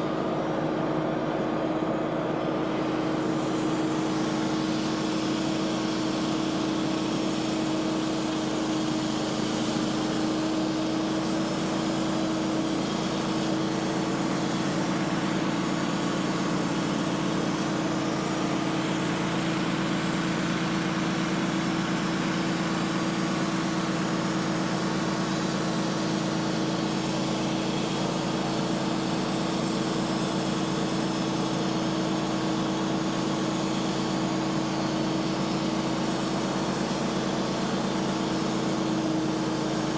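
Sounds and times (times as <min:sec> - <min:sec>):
sawmill engine humming: 0:01.1 - 0:39.9.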